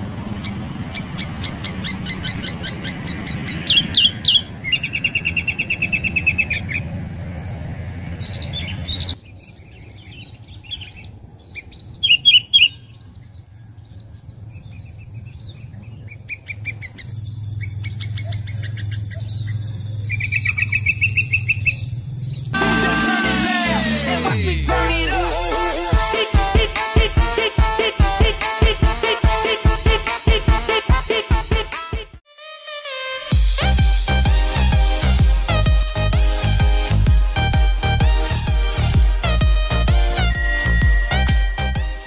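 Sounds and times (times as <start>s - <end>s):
bird chirps and whistled notes: 40.3s - 42.0s.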